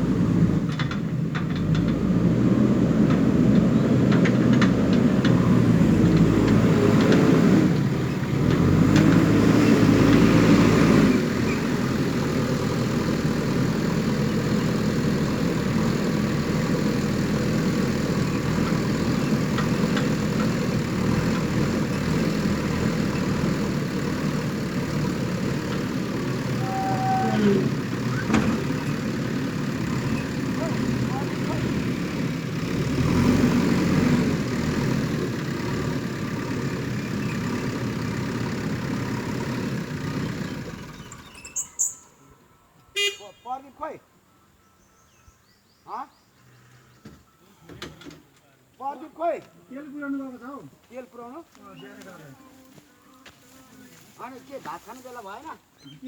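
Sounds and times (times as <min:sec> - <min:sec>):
diesel engine working: 0:00.0 - 0:43.4
brief high tone: 0:26.6 - 0:27.7.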